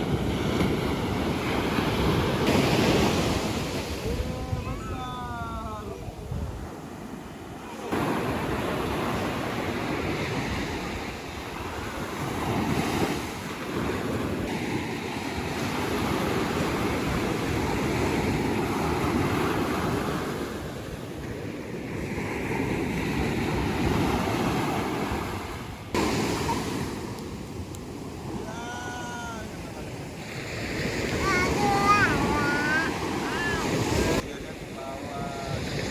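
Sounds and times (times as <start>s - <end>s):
ocean waves surging: 0.0s - 35.9s
wind buffeting microphone: 0.0s - 35.9s.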